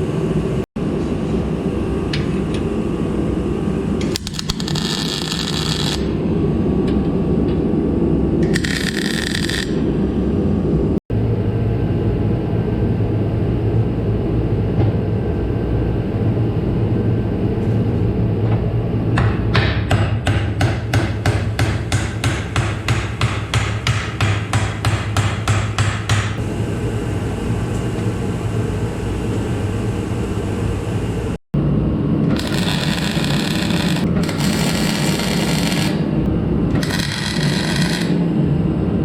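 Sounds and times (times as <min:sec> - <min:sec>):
steady low hum: 0:00.0 - 0:39.0
hammer striking metal: 0:19.2 - 0:26.4.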